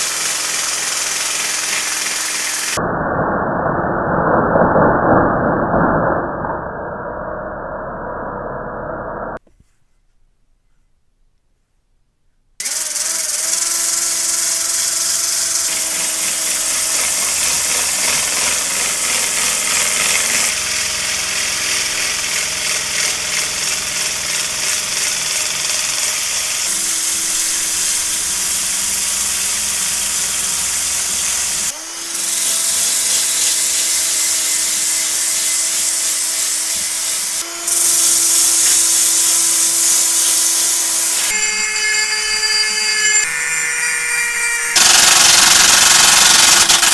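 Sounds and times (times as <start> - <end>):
power tool hissing and humming: 0.0 - 2.8, 12.6 - 46.9.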